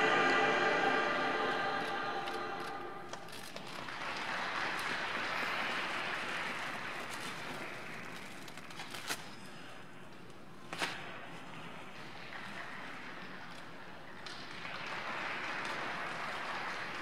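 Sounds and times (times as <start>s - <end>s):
music: 0.0s - 3.3s.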